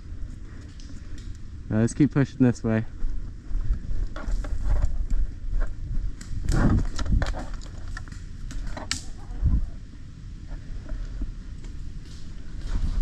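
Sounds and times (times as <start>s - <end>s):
rustling through brush: 2.9s - 13.0s
sharp clicks and snaps: 6.2s - 9.2s.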